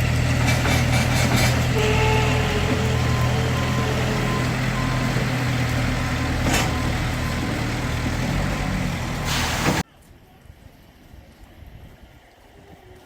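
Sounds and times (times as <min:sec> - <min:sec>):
vehicle engine running: 0:00.0 - 0:09.8.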